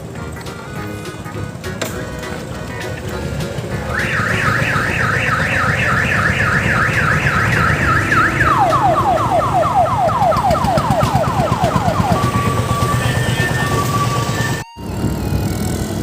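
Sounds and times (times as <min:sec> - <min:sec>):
diesel engine running: 0:00.0 - 0:16.0
electronic siren warbling and wailing: 0:03.8 - 0:16.0.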